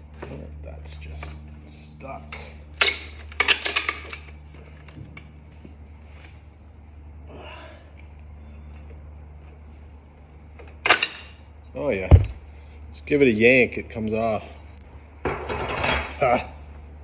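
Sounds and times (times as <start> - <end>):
steady low hum: 0.0 - 17.0
man straining breath: 7.2 - 8.0.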